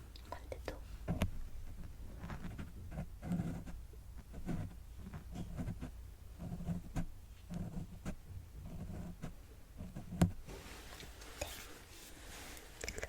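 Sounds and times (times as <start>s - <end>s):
soft brushing and rustling: 0.8s - 5.5s, 9.2s - 13.0s.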